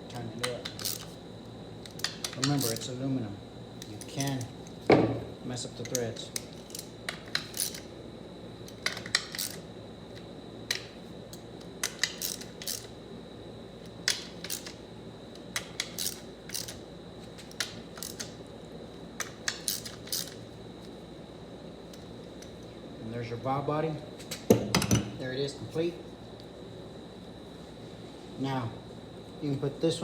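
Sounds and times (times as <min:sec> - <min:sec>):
ratchet wrench clicking: 0:11.8 - 0:12.9, 0:18.0 - 0:18.3, 0:19.5 - 0:20.4.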